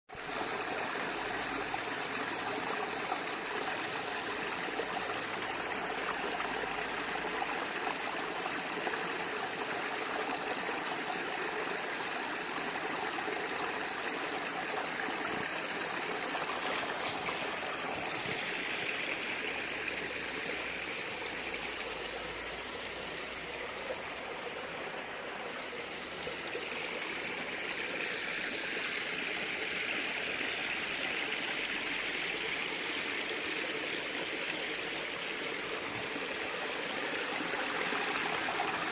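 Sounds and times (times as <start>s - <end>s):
stream water flowing: 0.1s - 38.9s.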